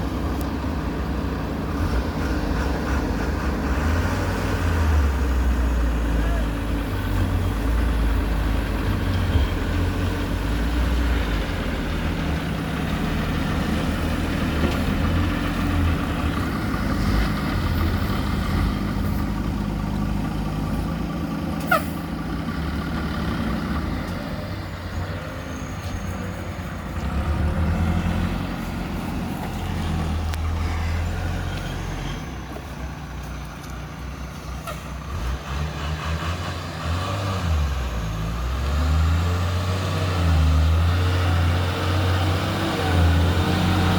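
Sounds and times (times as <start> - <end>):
diesel engines running: 0.0 - 43.9
sharp squeak: 25.3 - 26.6.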